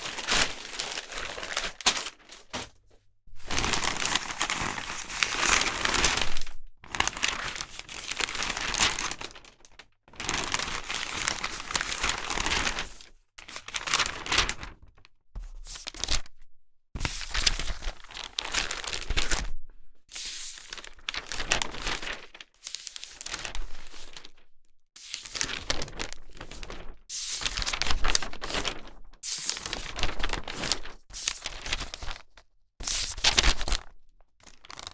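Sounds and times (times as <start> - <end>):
newspaper rustling and tearing: 0.0 - 14.8, 17.0 - 19.5, 20.2 - 24.4, 25.0 - 32.2, 32.8 - 34.9.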